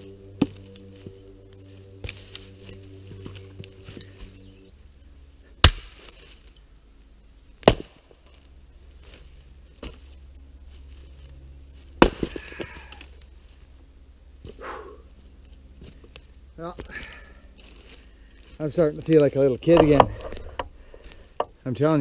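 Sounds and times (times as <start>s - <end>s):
axe chopping firewood: 5.6s - 6.1s, 7.6s - 8.1s, 12.0s - 12.8s, 19.7s - 20.7s.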